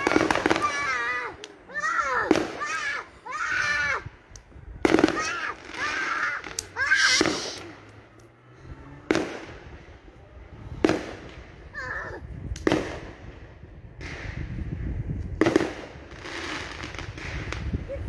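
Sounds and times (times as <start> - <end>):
fireworks crackling hiss: 0.0 - 10.1, 14.0 - 18.0
fireworks bangs: 0.0 - 18.0.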